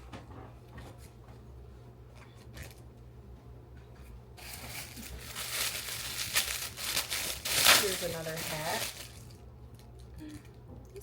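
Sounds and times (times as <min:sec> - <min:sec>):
plastic crinkling: 0:04.4 - 0:09.4
plastic packaging rustling: 0:04.4 - 0:09.4.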